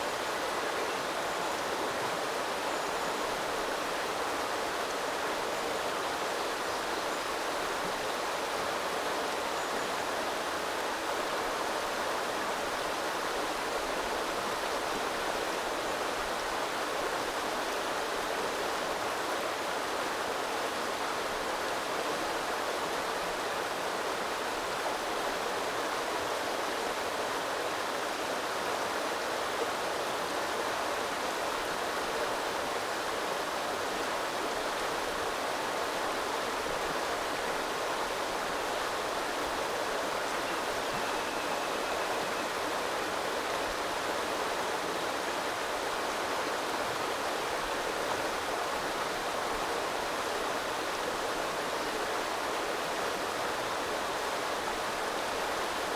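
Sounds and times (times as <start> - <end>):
river water rushing: 11.9 - 55.9.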